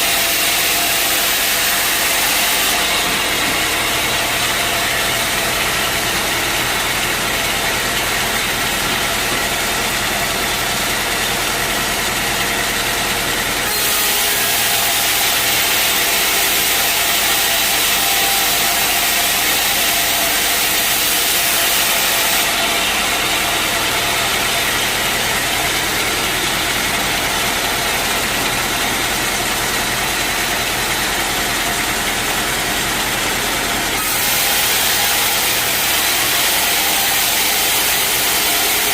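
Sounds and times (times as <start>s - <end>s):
saw hissing: 13.6s - 26.6s, 34.0s - 38.9s.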